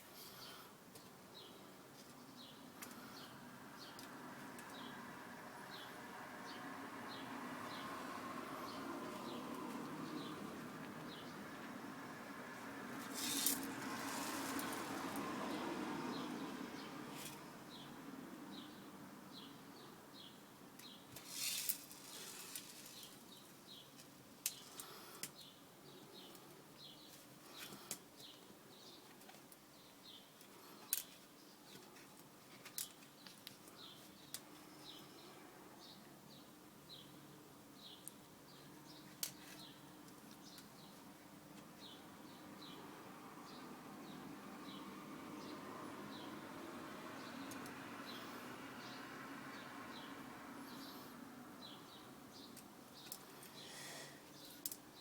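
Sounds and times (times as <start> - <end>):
small metal balls clicking: 21.2 - 23.2.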